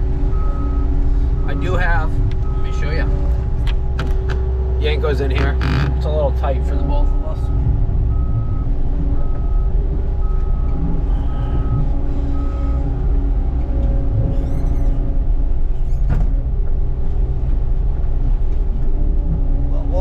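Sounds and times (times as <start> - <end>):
skid steer engine running: 0.0 - 20.0
backup alarm beeping: 0.2 - 4.8, 6.8 - 15.2.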